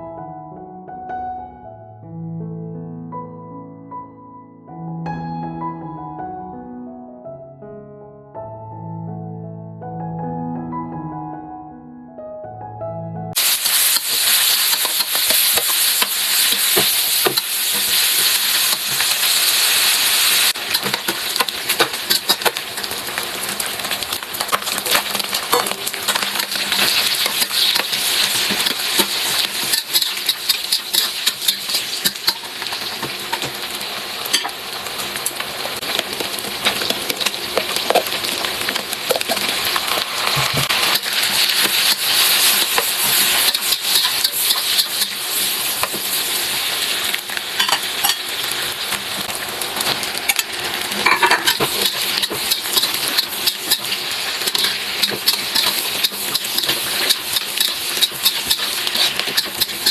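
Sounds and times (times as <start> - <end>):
food sizzling in a pan: 13.4 - 59.9.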